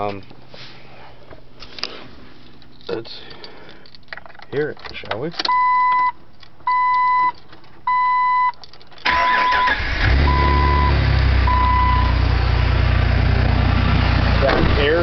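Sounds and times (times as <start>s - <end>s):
dashboard warning chime beeping: 5.5s - 6.1s, 6.7s - 12.2s
engine starter cranking: 9.0s - 10.4s.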